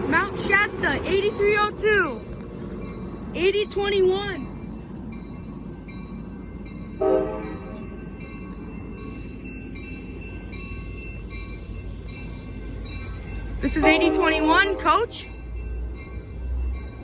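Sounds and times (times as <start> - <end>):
train cars rumbling past: 0.0 - 17.0
loud horn blast: 7.0 - 7.7, 13.8 - 15.1.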